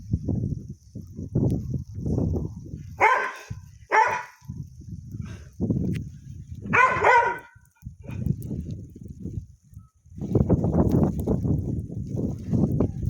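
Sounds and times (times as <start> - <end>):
blizzard wind buffeting microphone: 0.0 - 13.0
dog barking: 3.0 - 4.5, 6.7 - 8.2.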